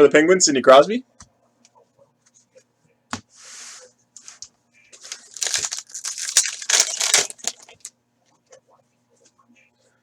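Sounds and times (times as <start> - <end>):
wrapper tearing and crinkling: 5.1 - 7.9.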